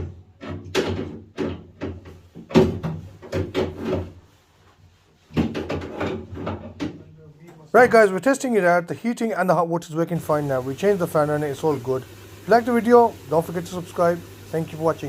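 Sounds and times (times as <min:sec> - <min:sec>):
cupboard door knocks and clatters: 0:00.0 - 0:04.1.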